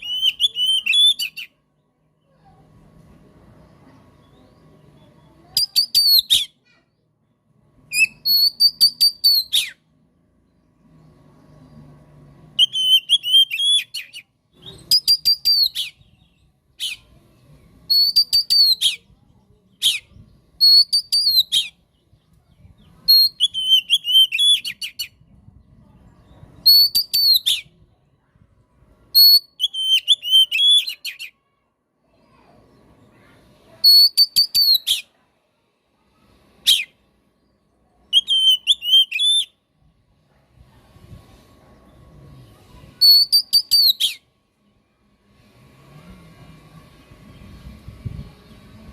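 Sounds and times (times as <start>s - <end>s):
magpie-robin singing: 0.0s - 1.6s, 4.2s - 6.8s, 7.9s - 9.8s, 12.5s - 27.8s, 29.2s - 31.4s, 33.8s - 35.2s, 38.0s - 39.6s, 43.0s - 44.3s.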